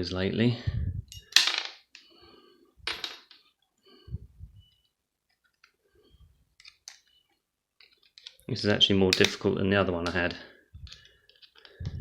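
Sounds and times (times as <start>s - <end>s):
small clicks of plastic parts: 6.6s - 8.5s.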